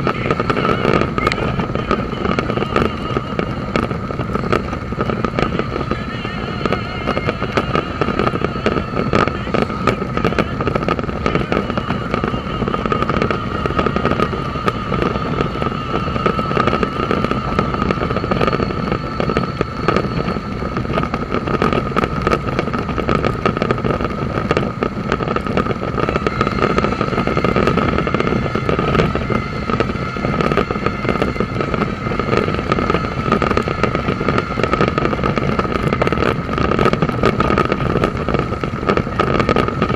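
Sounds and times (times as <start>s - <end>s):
constant whine: 0.0s - 39.9s
motorcycle engine: 0.0s - 39.9s
wind noise: 0.0s - 39.9s.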